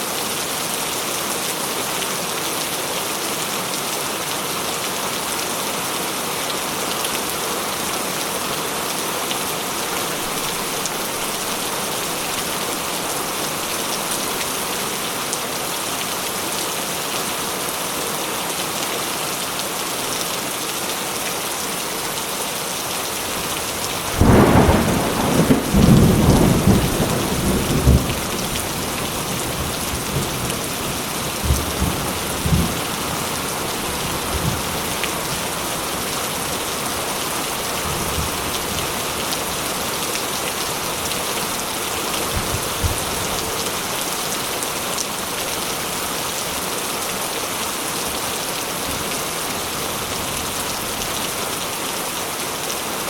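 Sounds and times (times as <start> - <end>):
steady rain: 0.0 - 53.0
thunder rumbling: 24.0 - 30.6.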